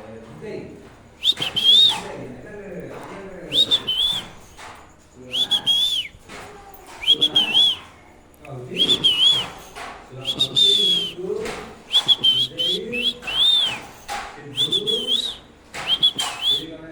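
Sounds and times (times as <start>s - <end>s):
parrot whistling: 1.2s - 2.1s, 3.5s - 4.6s, 5.3s - 6.3s, 6.9s - 7.9s, 8.8s - 11.2s, 11.9s - 14.0s, 14.6s - 16.7s.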